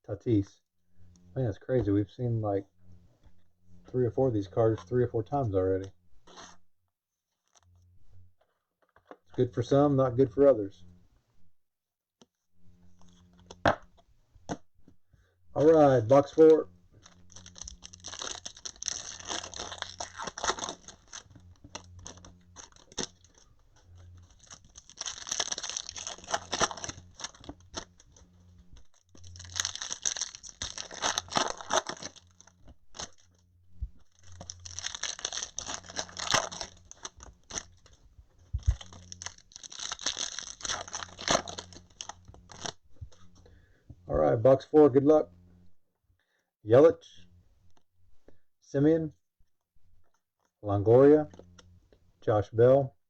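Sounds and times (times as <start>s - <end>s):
foil packs tearing and crinkling: 17.0s - 33.4s, 34.0s - 42.8s.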